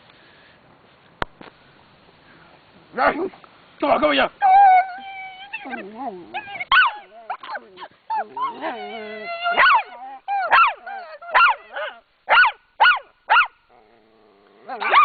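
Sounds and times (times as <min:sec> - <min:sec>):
small dog whining: 0:04.4 - 0:12.0
small dog barking: 0:05.6 - 0:08.6, 0:09.5 - 0:13.6, 0:14.8 - 0:15.0.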